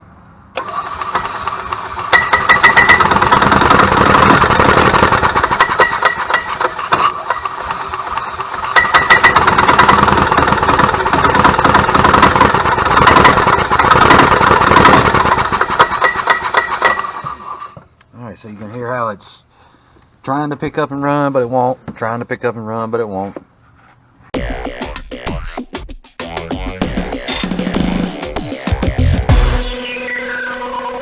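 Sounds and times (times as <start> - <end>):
engine misfiring and popping: 0.6 - 17.8.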